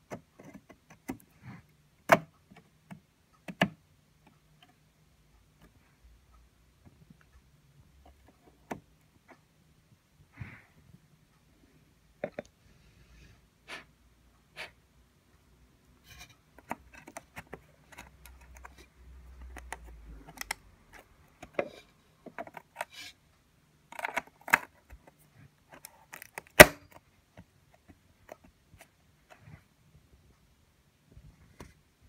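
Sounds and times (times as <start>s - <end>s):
small clicks taps and rubs: 0.0s - 4.8s, 16.0s - 23.2s, 23.9s - 29.8s.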